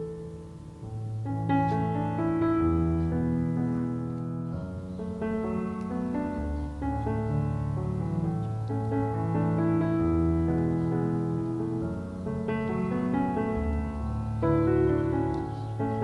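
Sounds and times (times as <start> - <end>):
soft slow keyboard music: 0.0 - 16.0.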